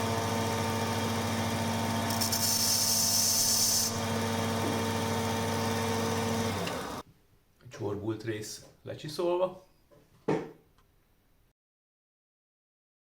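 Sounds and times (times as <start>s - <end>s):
belt grinder motor running: 0.0s - 7.0s
hissing grind of steel: 2.1s - 4.0s.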